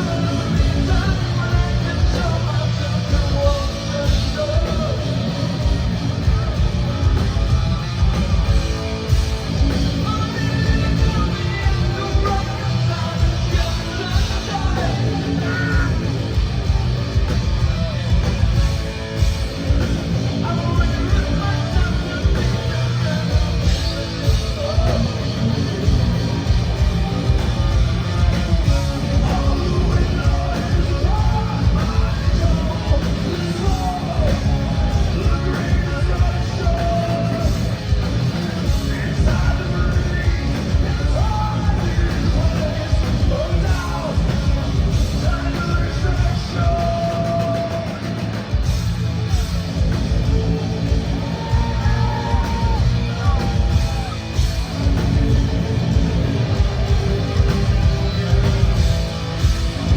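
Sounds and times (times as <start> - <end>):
bass guitar: 0.0 - 59.9
distorted electric guitars: 0.0 - 59.9
fast pounding drums: 0.0 - 59.9
shouted lead vocal: 0.0 - 59.9.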